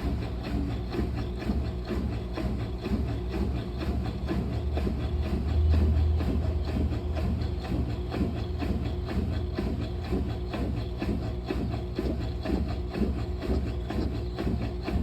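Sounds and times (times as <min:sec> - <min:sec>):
washing machine churning: 0:00.0 - 0:15.0.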